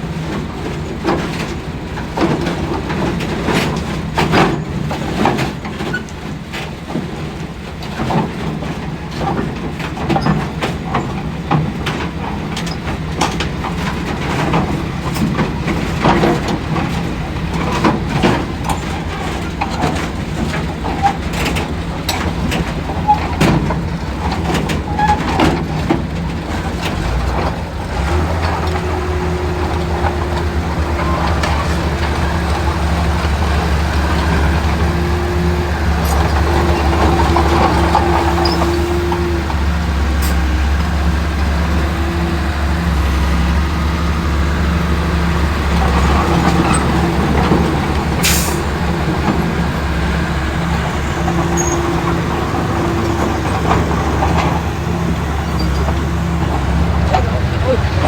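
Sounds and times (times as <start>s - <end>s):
bulldozer diesel engine running: 0.0s - 58.0s
metallic clanks of steel tracks: 0.0s - 58.0s.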